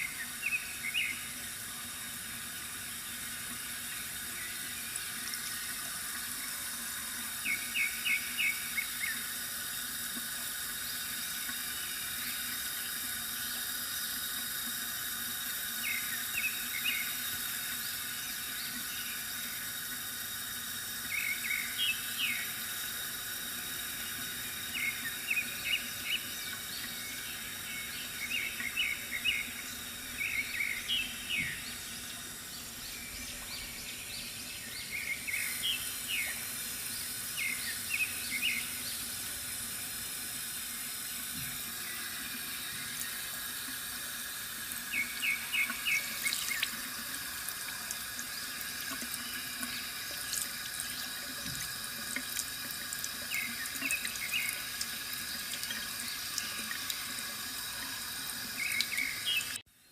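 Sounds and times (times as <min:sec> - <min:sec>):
water trickling from fountain: 0:00.0 - 0:59.6
small birds chirping: 0:07.4 - 0:09.3, 0:21.0 - 0:22.6, 0:23.9 - 0:39.3, 0:44.8 - 0:46.9, 0:53.0 - 0:57.0, 0:57.6 - 0:59.9.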